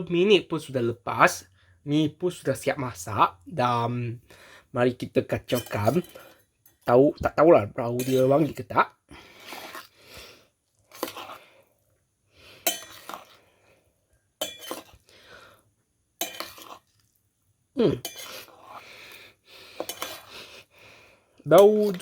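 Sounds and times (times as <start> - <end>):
cutlery scraping a plate: 5.5 - 6.8, 8.0 - 8.6, 10.9 - 11.4, 12.6 - 13.4, 14.4 - 15.0, 16.2 - 16.9, 18.0 - 18.8, 19.8 - 20.3, 21.6 - 22.0.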